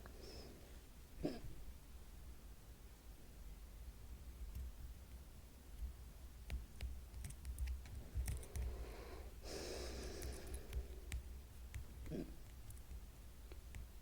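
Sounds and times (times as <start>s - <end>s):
person breathing out: 8.6s - 11.1s.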